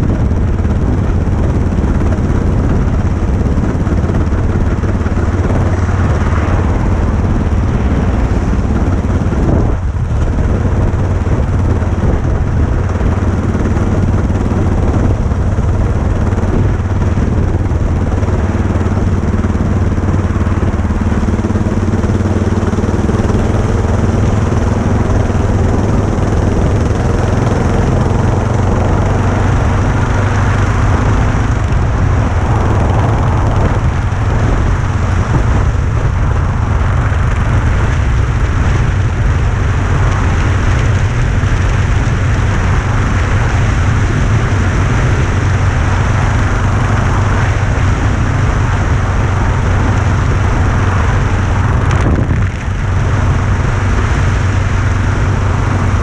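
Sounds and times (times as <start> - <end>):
motorcycle engine humming: 0.0 - 56.0.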